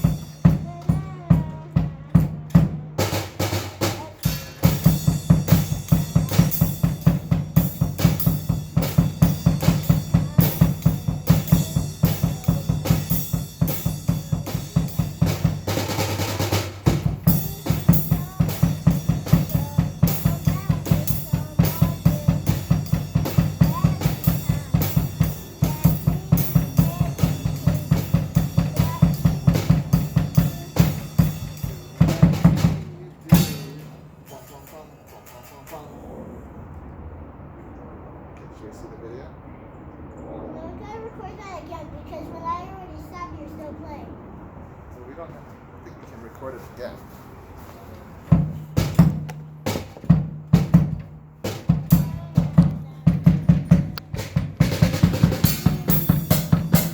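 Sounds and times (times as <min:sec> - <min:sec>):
drum kit fast beat: 0:00.0 - 0:34.3, 0:48.3 - 0:56.9
music: 0:00.0 - 0:34.7, 0:48.3 - 0:56.9.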